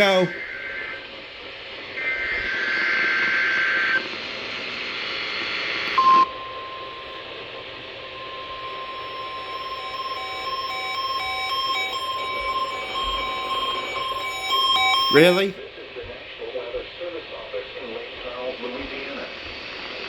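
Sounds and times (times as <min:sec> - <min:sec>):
warning alarm tone: 0:00.0 - 0:00.4, 0:05.9 - 0:15.6
steady data tones: 0:00.0 - 0:00.9, 0:05.8 - 0:15.6
broken interfering radio tones: 0:00.0 - 0:01.0, 0:05.9 - 0:15.5.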